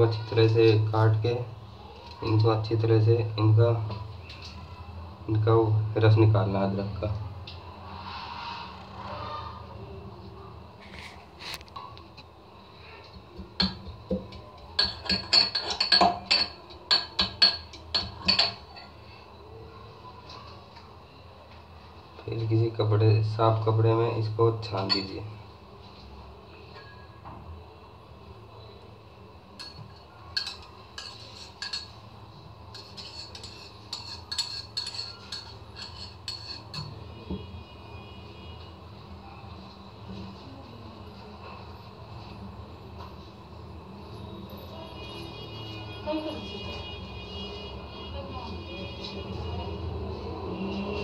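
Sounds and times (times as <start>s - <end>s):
utensils clinking against a vessel: 13.6s - 19.0s, 29.6s - 32.0s, 32.8s - 37.0s.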